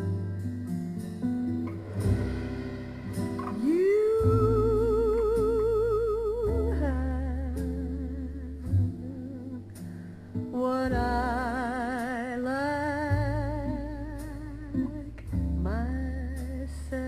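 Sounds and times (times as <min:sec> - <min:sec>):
slow vocal ballad over speakers: 0:03.4 - 0:17.0.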